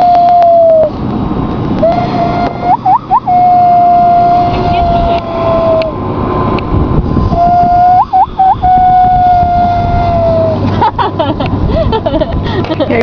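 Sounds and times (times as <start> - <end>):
person whistling loon call: 0.0 - 0.9, 1.8 - 5.9, 7.4 - 10.6.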